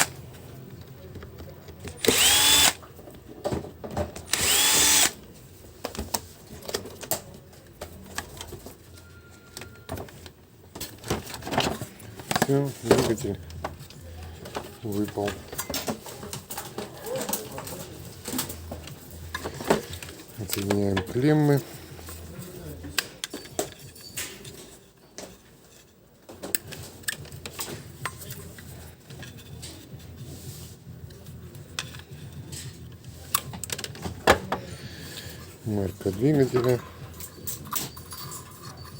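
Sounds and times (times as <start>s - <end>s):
plastic parts clicking and knocking: 9.6s - 21.4s, 31.8s - 34.6s
small parts clicking and clattering: 36.4s - 38.9s.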